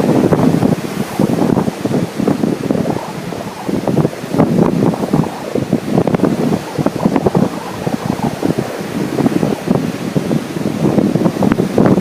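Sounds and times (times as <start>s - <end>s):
ocean surf: 0.0s - 12.0s
wind buffeting microphone: 0.0s - 12.0s.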